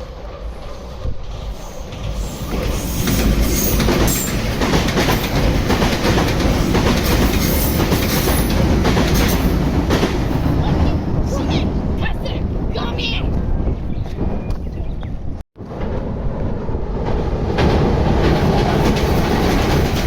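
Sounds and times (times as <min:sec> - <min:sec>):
electric train passing close by: 0:00.0 - 0:14.3, 0:15.6 - 0:20.0
train wheels clattering over rail joints: 0:01.0 - 0:10.6, 0:17.0 - 0:20.0.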